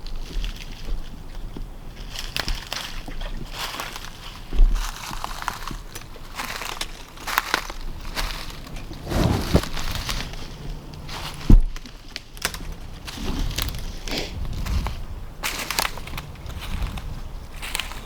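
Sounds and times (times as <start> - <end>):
footsteps crunching on ground: 0.0 - 18.0
heavy thump: 9.0 - 10.0.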